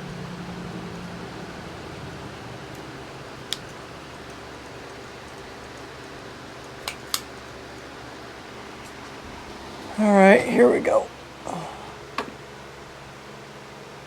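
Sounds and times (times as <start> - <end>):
low background hum: 0.0 - 14.0
metal parts clicking: 3.5 - 7.9.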